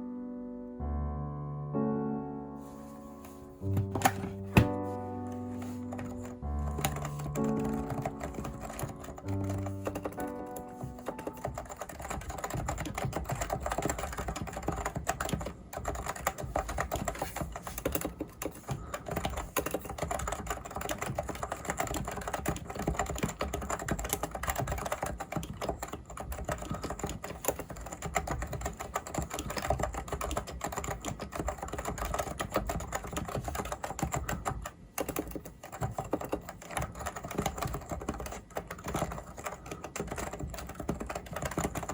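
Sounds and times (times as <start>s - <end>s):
background music: 0.0s - 15.1s
fast keyboard typing: 3.6s - 41.9s.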